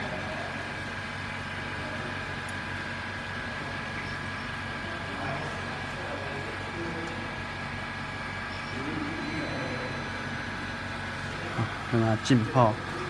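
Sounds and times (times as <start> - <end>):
steady mechanical hum: 0.0 - 13.0
faint high whine: 8.3 - 13.0.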